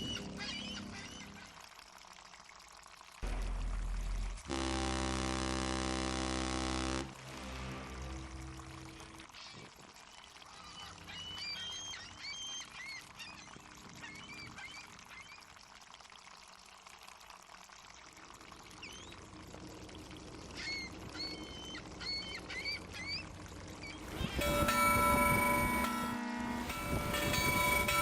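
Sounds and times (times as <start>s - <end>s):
seagulls calling: 20.5s - 28.0s.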